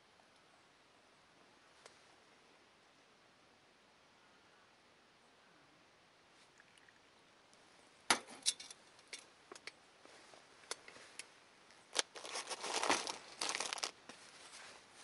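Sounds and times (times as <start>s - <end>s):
plastic crinkling and tearing: 11.9s - 14.0s.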